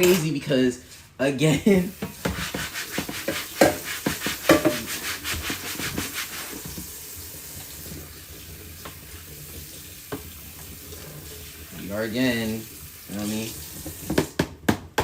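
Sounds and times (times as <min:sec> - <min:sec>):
knife chopping on cutting board: 0:02.2 - 0:04.9.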